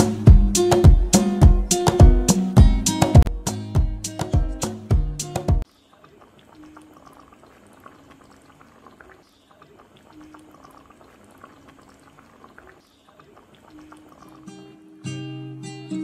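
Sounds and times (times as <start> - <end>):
pot of curry simmering: 5.7 - 14.8.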